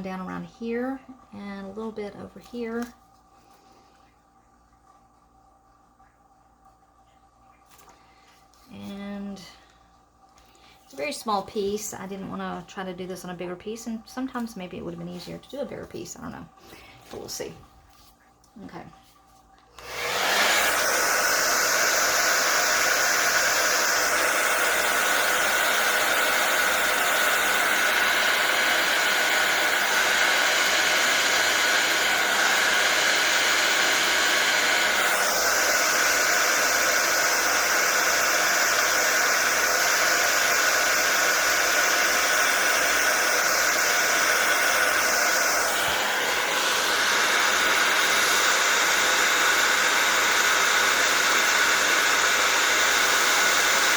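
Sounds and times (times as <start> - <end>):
blow dryer blowing air: 19.8 - 53.9.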